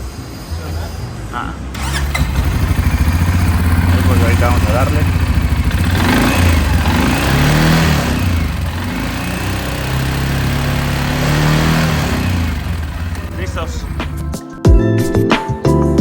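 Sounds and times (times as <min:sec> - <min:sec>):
quad bike engine revving: 0:01.8 - 0:14.2.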